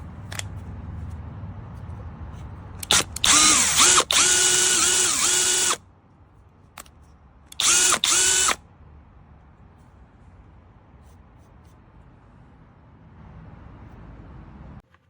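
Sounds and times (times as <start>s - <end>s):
cordless drill whining: 2.8s - 5.8s, 7.6s - 8.6s.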